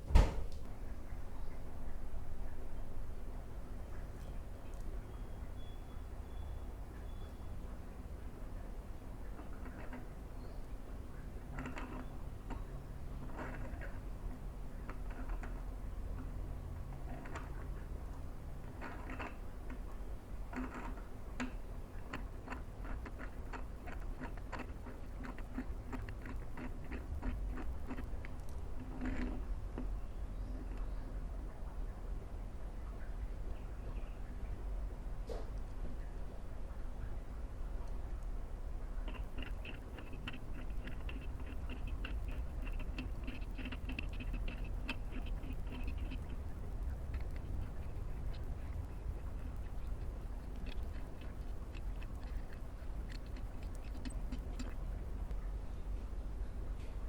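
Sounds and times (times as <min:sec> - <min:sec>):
low steady hum: 0:00.0 - 0:57.0.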